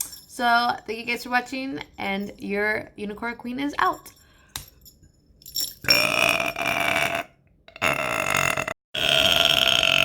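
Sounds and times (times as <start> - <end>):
woman burping: 5.9 - 10.0.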